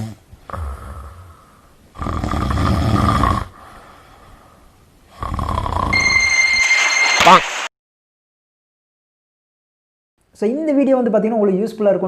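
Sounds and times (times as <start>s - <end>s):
person snoring: 0.0s - 4.0s, 5.1s - 6.0s.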